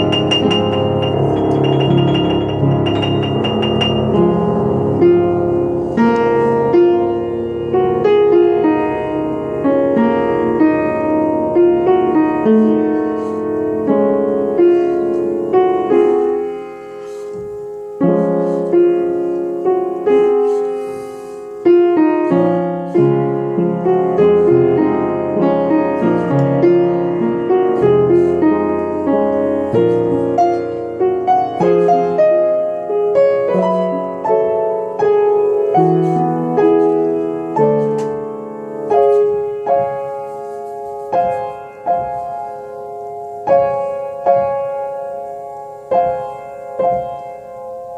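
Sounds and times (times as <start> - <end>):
slow gentle piano piece: 0.0 - 47.9.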